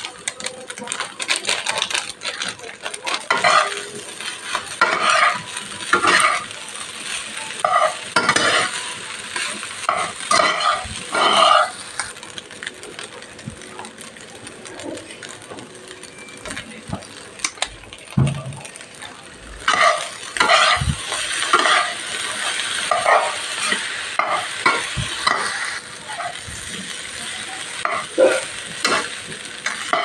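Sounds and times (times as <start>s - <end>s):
rice sizzling in a pan: 0.0s - 30.0s
spatula scraping a pan: 3.3s - 6.5s, 7.6s - 12.1s, 19.7s - 26.8s.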